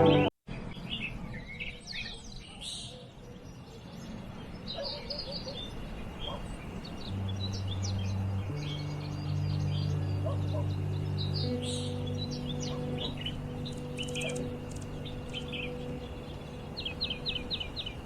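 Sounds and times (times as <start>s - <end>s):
low steady drone: 0.0s - 0.3s, 7.0s - 18.0s
songbirds chirping: 0.0s - 18.0s
faint steady hiss: 5.8s - 18.0s.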